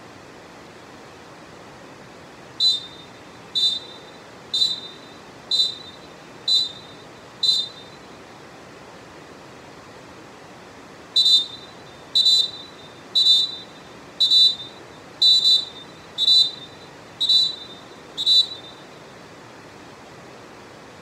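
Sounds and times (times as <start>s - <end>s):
referee whistle blasts: 2.6s - 8.1s, 11.2s - 18.9s.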